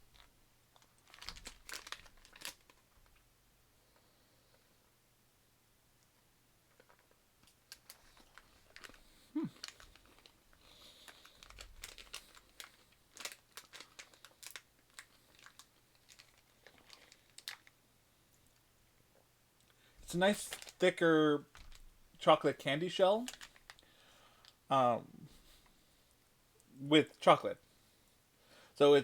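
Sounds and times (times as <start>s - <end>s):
candy crunching: 0.1s - 3.2s, 6.7s - 17.8s, 23.2s - 24.6s
plastic bag crinkling: 0.1s - 3.2s, 6.7s - 17.8s, 20.0s - 21.9s, 23.2s - 24.6s.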